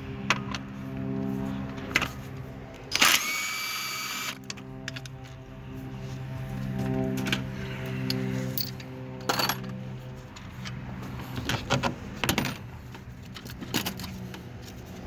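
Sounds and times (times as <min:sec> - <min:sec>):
metallic clinks and clatters: 0:07.8 - 0:09.8.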